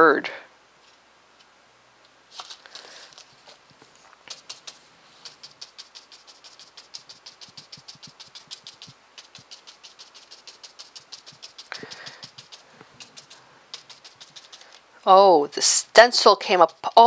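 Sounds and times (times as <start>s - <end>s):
stencil brush dabbing taps: 4.2s - 14.8s.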